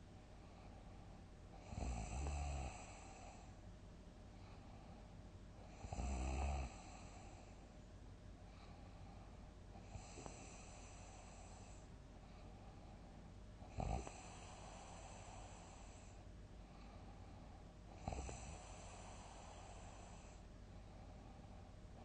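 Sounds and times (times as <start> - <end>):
faint high breath hiss: 0.0 - 22.0
person snoring: 1.6 - 3.5, 5.7 - 7.4, 13.7 - 16.2, 18.0 - 20.4.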